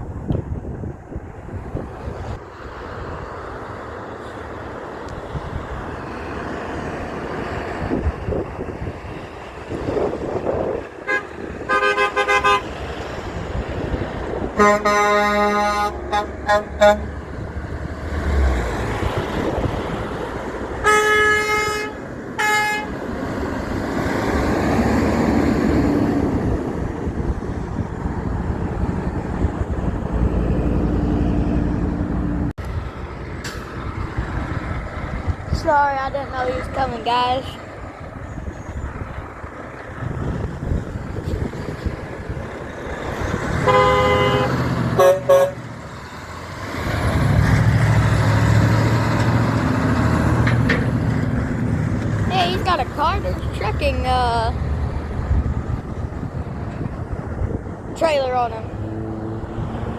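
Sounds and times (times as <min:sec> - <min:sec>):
passing trucks: 0:00.0 - 0:59.9
truck air horn blasts: 0:11.0 - 0:12.7, 0:14.6 - 0:17.2, 0:20.8 - 0:23.0, 0:43.6 - 0:45.7.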